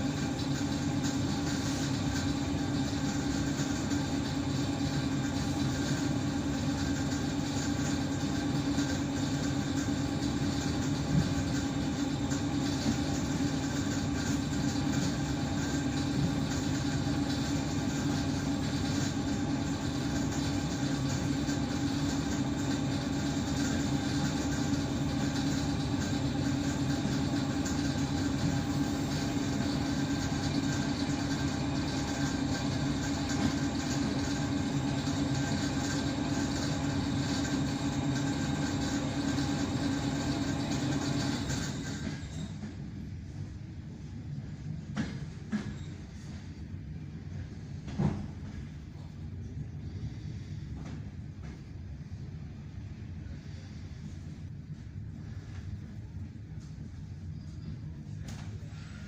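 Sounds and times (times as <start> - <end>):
train interior noise: 0.0 - 59.0
low hum: 41.7 - 59.0.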